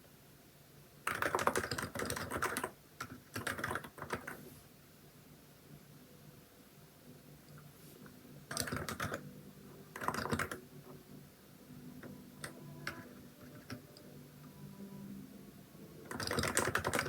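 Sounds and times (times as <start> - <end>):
keyboard typing: 1.1 - 4.4, 8.5 - 9.3, 9.9 - 10.7, 12.0 - 14.1, 16.0 - 17.0.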